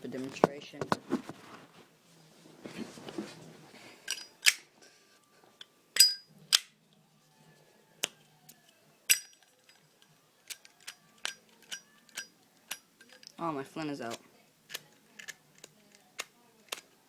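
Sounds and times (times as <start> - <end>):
lighter lid and flint wheel clicks: 4.1 - 4.6, 6.0 - 6.8, 10.4 - 13.4, 14.1 - 16.9.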